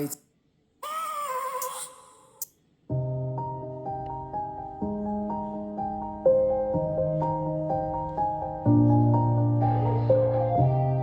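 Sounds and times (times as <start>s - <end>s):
soft piano music: 2.9s - 11.0s.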